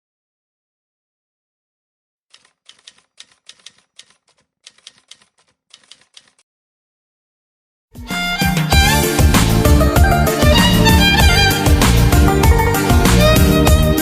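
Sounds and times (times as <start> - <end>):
faint rapid keystroke clicks: 2.3 - 6.4.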